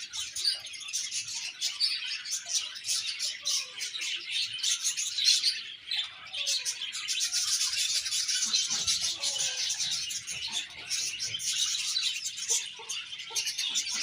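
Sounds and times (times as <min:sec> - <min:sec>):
budgerigars chirping and warbling: 0:00.0 - 0:14.0.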